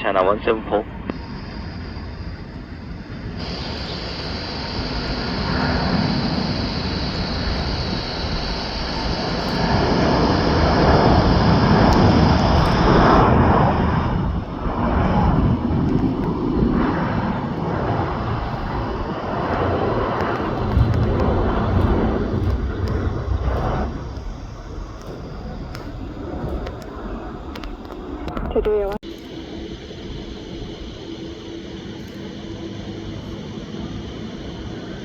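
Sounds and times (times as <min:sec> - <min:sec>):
jet engine rumble: 0:00.0 - 0:35.0
jet engines rushing with high whine: 0:00.0 - 0:35.0.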